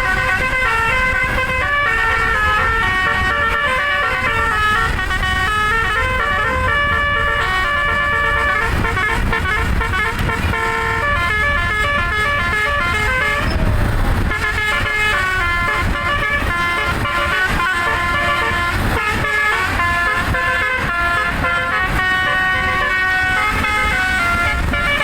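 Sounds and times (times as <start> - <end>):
low engine rumble: 0.0 - 25.0
musical air horn melody: 0.0 - 25.0.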